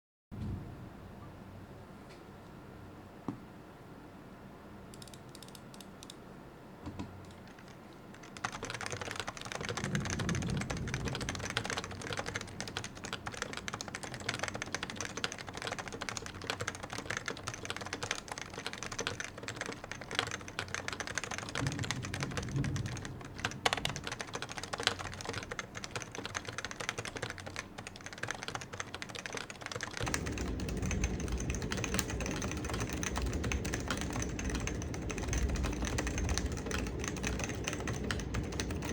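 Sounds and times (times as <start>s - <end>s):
keyboard typing: 4.9s - 6.2s, 6.9s - 38.9s
low thunder rumbling: 8.4s - 26.4s, 30.0s - 38.9s.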